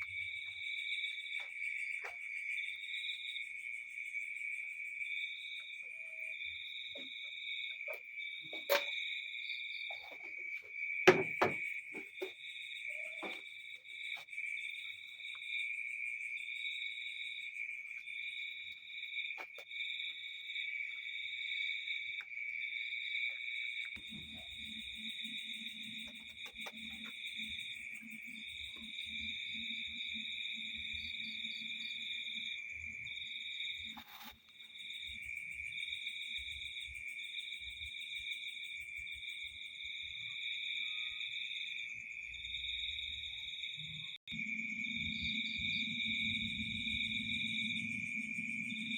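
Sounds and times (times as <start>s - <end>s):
crickets chirping: 0.0s - 48.9s
sharp knocks: 11.1s - 12.3s
low buzzing hum: 44.3s - 48.9s.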